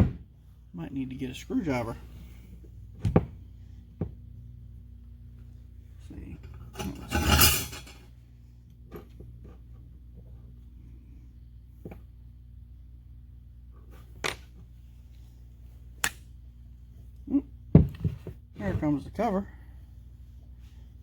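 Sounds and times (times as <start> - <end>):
steady low hum: 0.0 - 21.0
metal clattering and scraping: 6.4 - 8.1.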